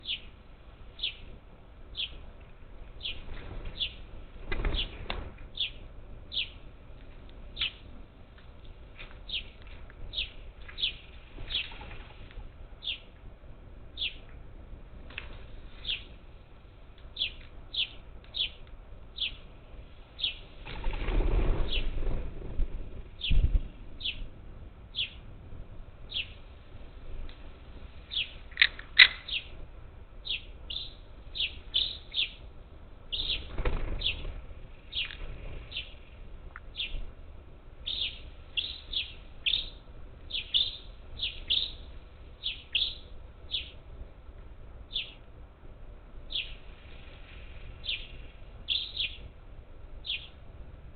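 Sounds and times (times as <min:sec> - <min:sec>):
wings flapping: 0:03.1 - 0:05.4, 0:20.6 - 0:23.8, 0:33.1 - 0:35.7
parakeets calling: 0:04.6 - 0:06.6, 0:09.3 - 0:11.8, 0:15.8 - 0:16.2, 0:19.2 - 0:19.4, 0:20.2 - 0:20.5, 0:28.1 - 0:29.6, 0:30.2 - 0:32.4, 0:33.1 - 0:36.1, 0:36.7 - 0:37.0, 0:37.8 - 0:43.8, 0:44.9 - 0:45.2, 0:47.8 - 0:49.3, 0:50.0 - 0:50.4.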